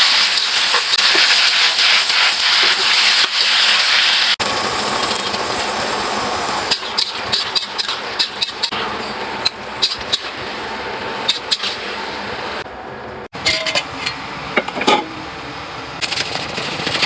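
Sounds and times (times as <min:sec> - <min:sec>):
steady hiss: 0:00.0 - 0:06.9.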